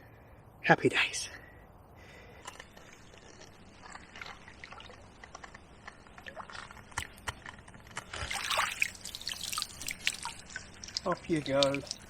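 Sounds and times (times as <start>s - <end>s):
water splashing and dripping: 2.5s - 7.4s, 8.1s - 12.0s.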